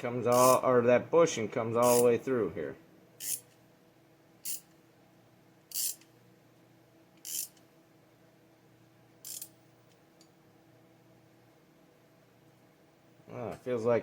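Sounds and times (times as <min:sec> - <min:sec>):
hand tool cranking strokes: 0:00.3 - 0:00.6, 0:01.8 - 0:02.1, 0:03.2 - 0:03.4, 0:05.7 - 0:06.0, 0:07.3 - 0:07.5, 0:09.3 - 0:09.5.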